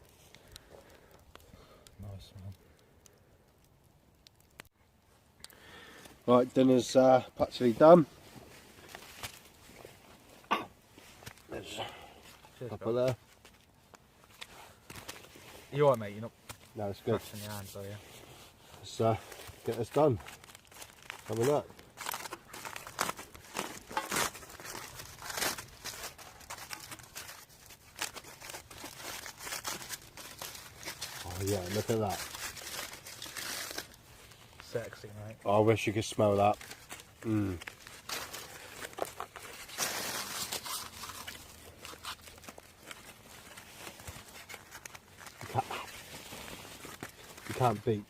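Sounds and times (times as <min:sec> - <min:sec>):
crackly rustle of opening potato: 0:00.0 - 0:48.0
foil crinkling and tearing: 0:07.4 - 0:10.0, 0:11.0 - 0:48.0
small clicks and scrapes: 0:12.2 - 0:17.9, 0:36.5 - 0:46.2.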